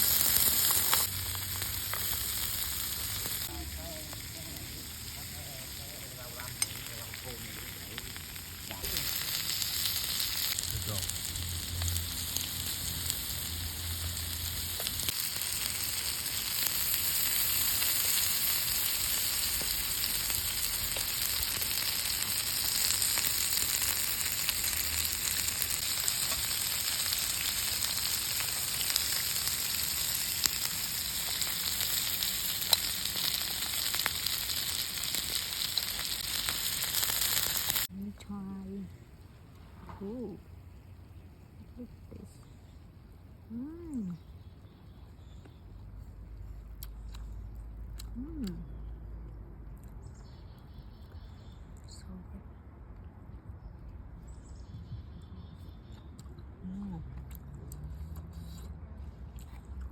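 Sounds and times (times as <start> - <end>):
mussels sizzling on a grill: 0.0 - 37.9.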